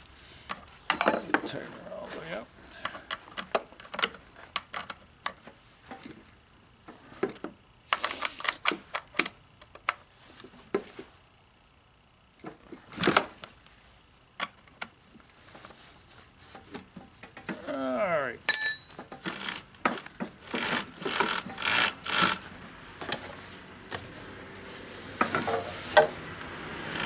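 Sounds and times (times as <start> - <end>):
scraping rasp: 19.2 - 22.5.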